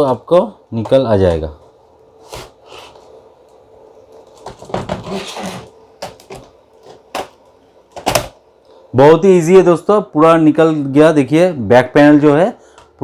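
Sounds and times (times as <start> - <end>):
plastic scraping: 4.3 - 7.1.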